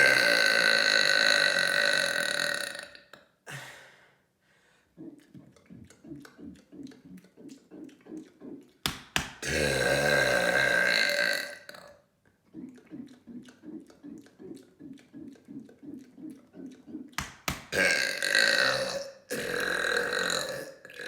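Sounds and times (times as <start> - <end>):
person belching: 0.0 - 3.1, 9.4 - 12.0, 12.6 - 21.0
soft rhythmic taps: 5.0 - 9.5, 12.2 - 17.8.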